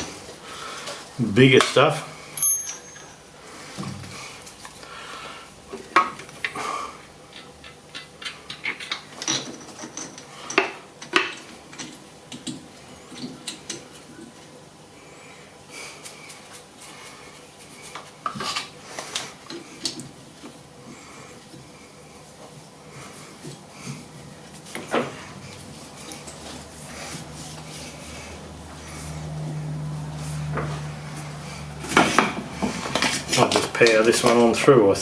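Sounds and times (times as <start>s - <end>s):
metal tools clinking and scraping: 1.6s - 3.3s.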